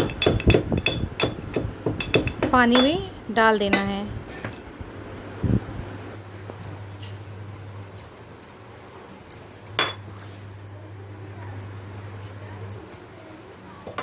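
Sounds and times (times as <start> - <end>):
utensil clinking against pot: 0.0 - 3.1
low steady hum: 0.0 - 14.0.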